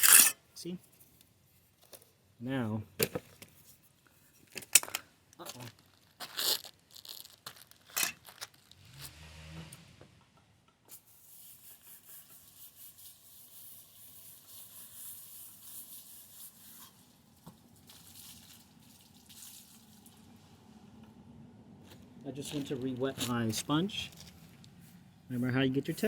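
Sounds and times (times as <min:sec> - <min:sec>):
tool scraping wet concrete: 0:00.0 - 0:00.4.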